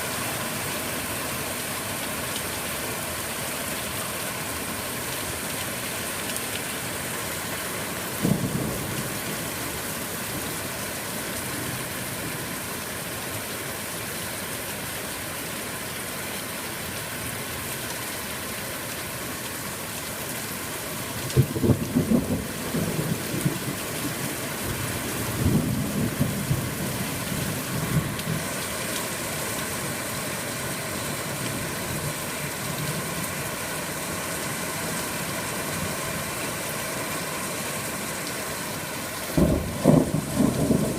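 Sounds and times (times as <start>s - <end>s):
heavy rain falling: 0.0s - 40.9s
thunder rumbling: 8.2s - 9.2s, 21.4s - 23.9s, 24.6s - 28.5s, 39.4s - 40.9s.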